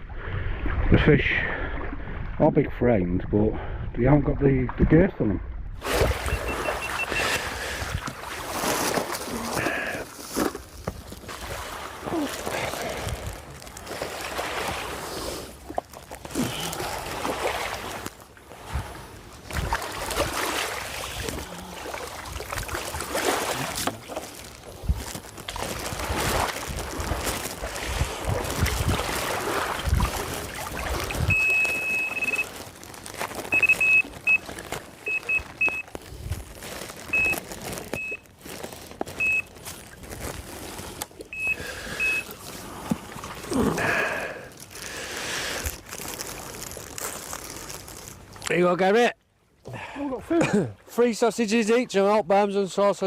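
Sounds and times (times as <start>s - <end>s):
high-pitched electronic beeps: 6.3s - 7.4s, 31.3s - 32.5s, 33.5s - 34.4s, 35.1s - 35.8s
wind buffeting microphone: 27.6s - 31.5s.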